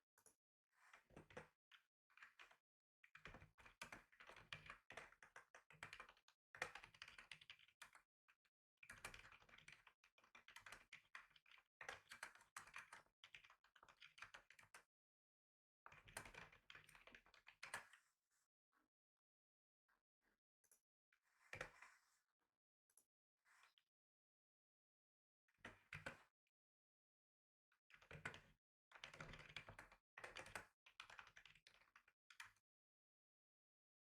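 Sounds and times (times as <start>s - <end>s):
fast typing on computer keyboard: 3.3s - 8.0s, 9.0s - 14.7s, 28.2s - 32.0s.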